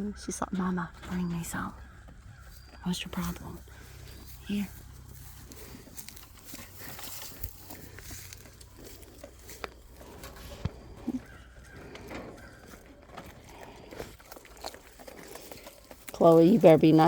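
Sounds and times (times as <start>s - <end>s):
goats rustling hay: 3.8s - 13.0s.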